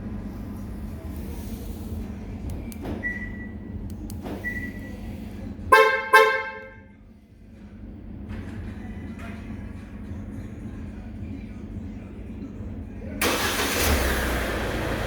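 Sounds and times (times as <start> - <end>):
car horn chirping: 5.7 - 6.9.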